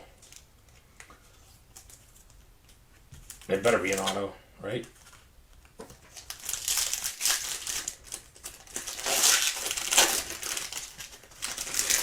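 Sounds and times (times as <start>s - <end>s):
foil wrapper crinkling: 3.3s - 4.2s, 6.0s - 12.0s.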